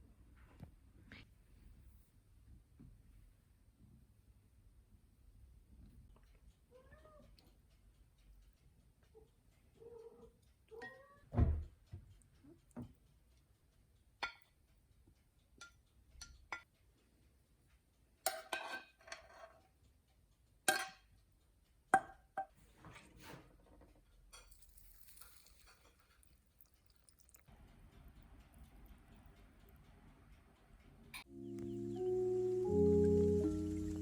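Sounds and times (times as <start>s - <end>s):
dishes and cutlery clinking: 18.3s - 19.7s, 20.7s - 21.1s, 22.0s - 26.4s.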